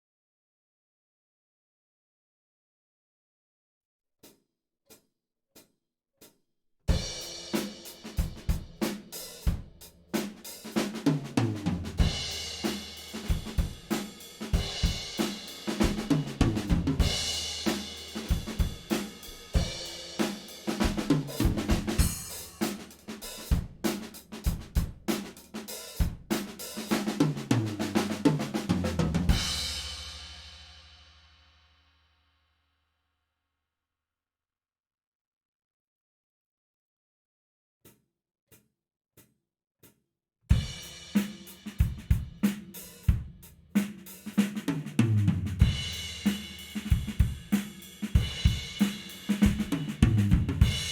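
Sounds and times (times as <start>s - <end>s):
drum kit groove: 6.9s - 30.9s, 40.5s - 50.9s.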